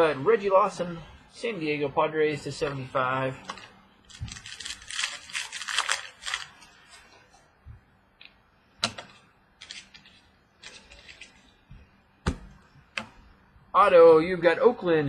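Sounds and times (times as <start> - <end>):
packaging rustling: 3.4 - 7.2, 9.1 - 11.6.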